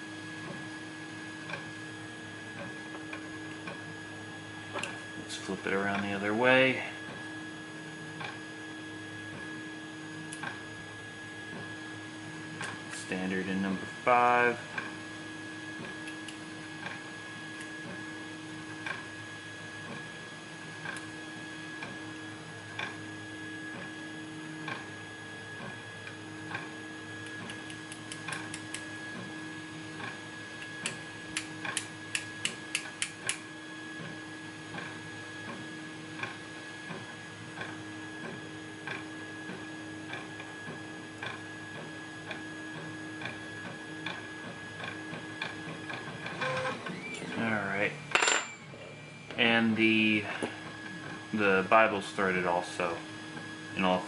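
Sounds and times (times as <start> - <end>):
steady electrical hum: 0.0 - 35.2, 44.9 - 54.0.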